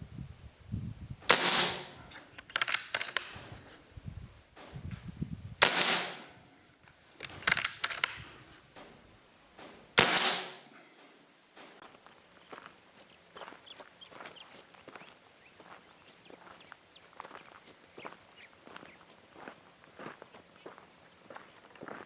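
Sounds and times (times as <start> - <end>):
air rifle shots: 1.3 - 3.6, 5.6 - 6.4, 7.2 - 9.0, 9.6 - 10.8
metallic clicks of rifle action: 1.3 - 3.8, 5.6 - 9.0, 9.6 - 11.8.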